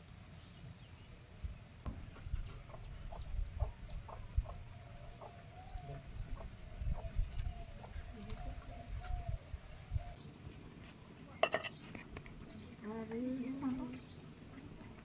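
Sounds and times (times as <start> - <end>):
dull low knocks: 1.8 - 4.6
chickens clucking: 1.9 - 9.4.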